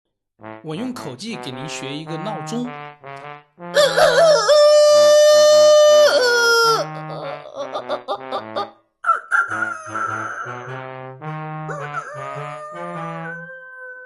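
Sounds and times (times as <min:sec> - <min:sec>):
background music: 0:00.4 - 0:14.0
person imitating rooster crow: 0:03.8 - 0:10.6, 0:11.7 - 0:14.0.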